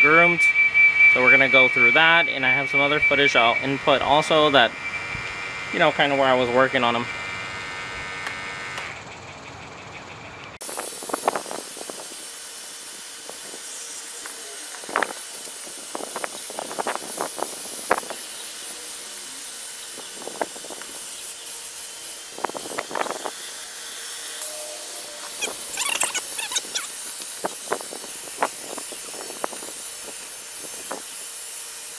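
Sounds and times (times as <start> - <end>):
vacuum suction hiss: 10.6 - 31.9.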